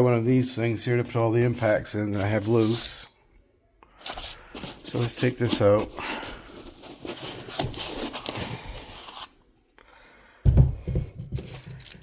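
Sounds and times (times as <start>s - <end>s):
packaging rustling and scraping: 4.0s - 9.5s, 11.2s - 12.0s.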